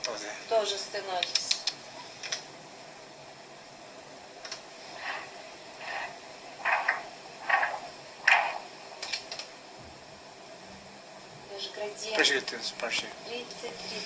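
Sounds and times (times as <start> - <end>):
sharp clicks: 1.2 - 2.4, 4.4 - 4.6, 8.3 - 9.5.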